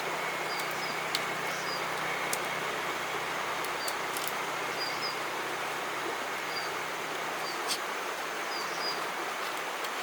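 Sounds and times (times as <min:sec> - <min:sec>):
outdoor background hiss: 0:00.0 - 0:10.0
bird chirps: 0:00.4 - 0:01.9.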